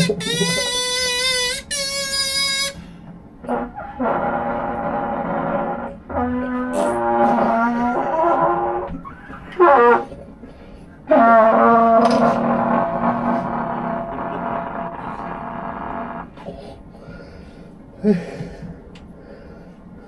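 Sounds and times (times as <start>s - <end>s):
brass instrument playing: 0.0s - 2.9s, 3.5s - 8.9s, 11.1s - 16.3s.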